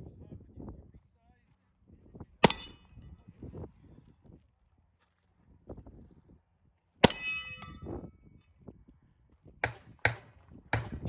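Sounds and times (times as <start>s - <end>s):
pistol shots: 2.4s - 2.9s
steel plate ringing: 2.4s - 3.1s, 7.0s - 8.0s.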